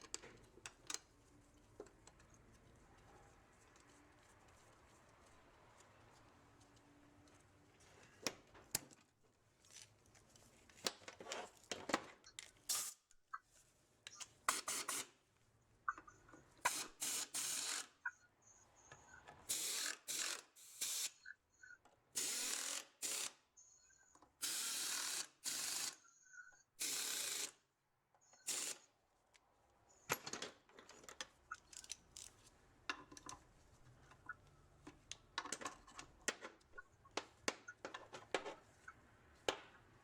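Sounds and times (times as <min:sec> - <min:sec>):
clicks and knocks of tools: 0:00.0 - 0:01.1, 0:01.7 - 0:02.6, 0:29.3 - 0:39.8
short hissing bursts: 0:12.7 - 0:13.0.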